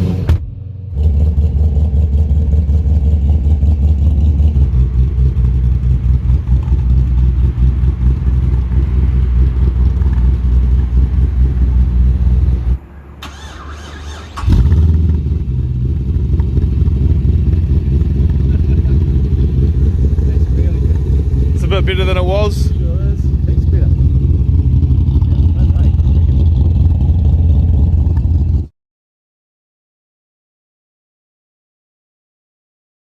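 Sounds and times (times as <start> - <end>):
car engine with loud low exhaust: 0.0 - 13.2, 14.4 - 28.7.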